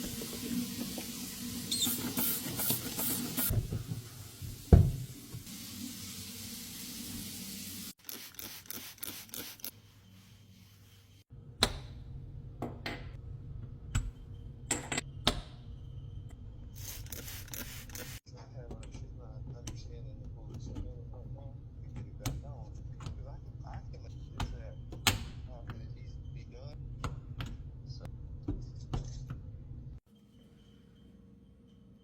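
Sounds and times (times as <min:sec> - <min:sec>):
hiss: 0:16.8 - 0:18.2.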